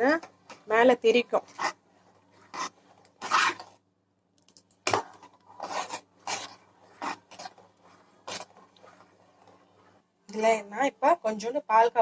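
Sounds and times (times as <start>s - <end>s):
spoon scraping a pan: 1.3s - 3.8s, 4.9s - 9.6s.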